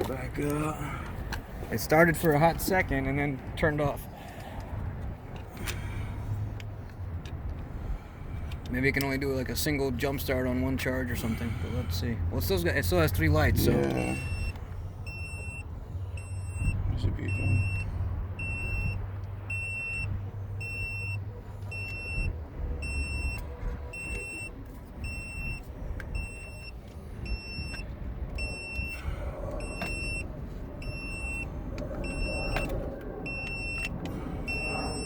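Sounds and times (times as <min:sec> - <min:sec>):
jump starter beeping: 0:26.2 - 0:29.0, 0:33.3 - 0:35.0.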